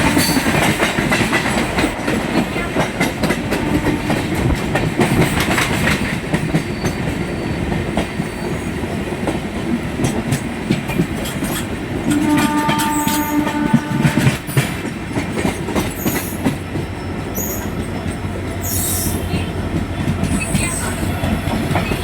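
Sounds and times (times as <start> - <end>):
train rumbling on track: 0.0 - 22.0
train horn: 2.6 - 4.4, 12.1 - 14.8
wheels clacking over rail joints: 9.2 - 22.0.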